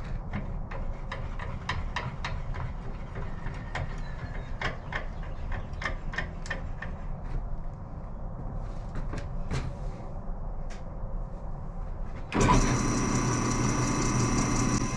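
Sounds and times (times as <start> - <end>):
drill bit chattering: 12.4 - 14.9
drill press motor hum: 12.4 - 14.9.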